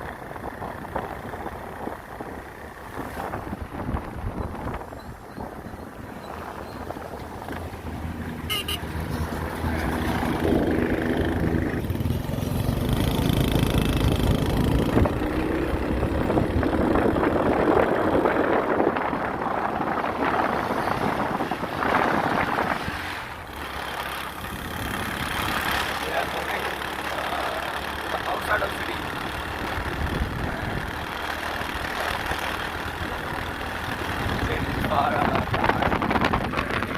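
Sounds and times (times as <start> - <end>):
road and wind noise: 0.0 - 36.9
vehicle engine running: 23.4 - 36.9.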